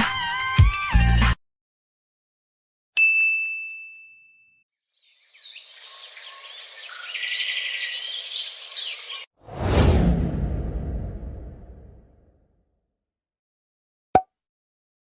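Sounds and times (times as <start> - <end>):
birds chirping: 4.9 - 9.3.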